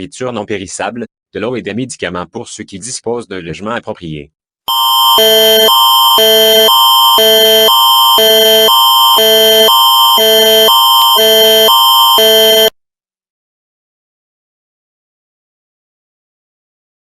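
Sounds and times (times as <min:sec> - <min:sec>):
electronic alert tone alternating chords: 0:04.7 - 0:12.7.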